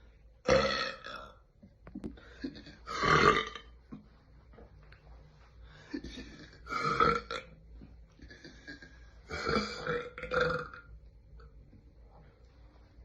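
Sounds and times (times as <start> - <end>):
woman burping: 0.5 - 1.3, 2.4 - 3.7, 6.0 - 7.5, 8.4 - 10.9.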